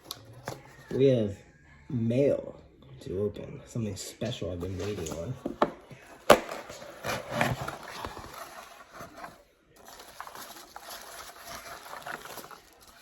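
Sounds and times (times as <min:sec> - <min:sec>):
packaging rustling and scraping: 0:00.0 - 0:01.0, 0:04.6 - 0:13.0.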